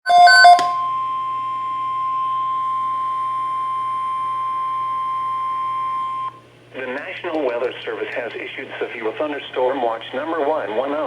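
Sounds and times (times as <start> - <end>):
steady warning alarm tone: 0.0 - 6.3.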